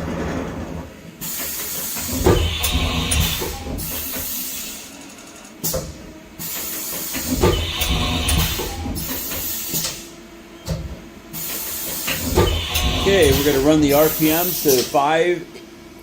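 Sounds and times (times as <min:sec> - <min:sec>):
machine mechanical clunks: 0:00.0 - 0:04.4, 0:05.6 - 0:15.0
compressed air hissing: 0:06.4 - 0:10.1, 0:11.4 - 0:15.0.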